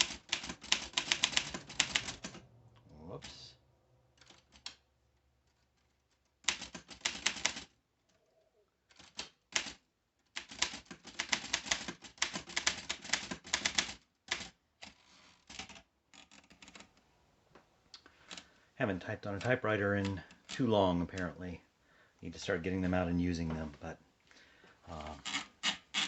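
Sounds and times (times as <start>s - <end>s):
typewriter keys striking: 0.0s - 2.4s, 6.4s - 7.7s, 8.9s - 16.8s.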